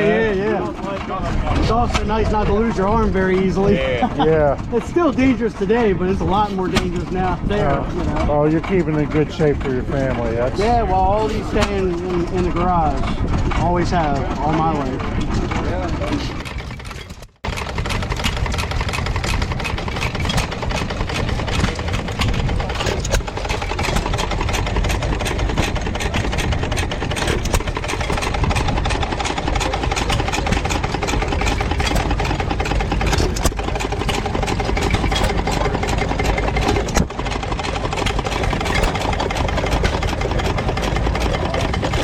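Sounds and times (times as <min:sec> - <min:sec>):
gas engines idling: 0:00.0 - 0:42.0
sharp mechanical clicks: 0:14.0 - 0:42.0.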